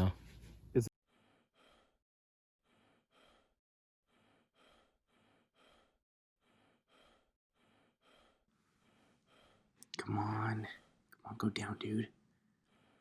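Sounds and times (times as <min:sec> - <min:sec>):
quick soft breathing: 0:00.2 - 0:02.0, 0:02.6 - 0:09.9.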